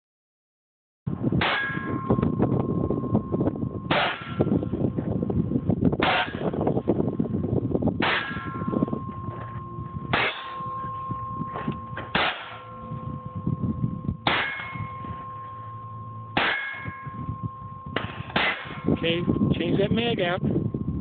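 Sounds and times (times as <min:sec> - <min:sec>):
gunshots with metallic ring: 0:12.1 - 0:12.6.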